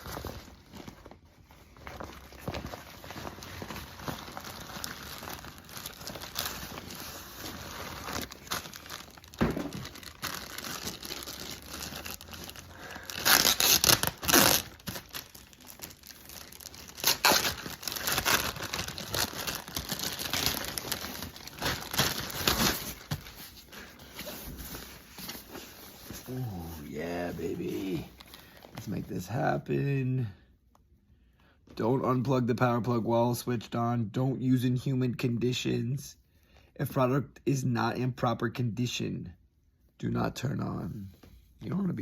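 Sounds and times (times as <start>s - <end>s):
packaging crinkling: 0.0s - 29.0s.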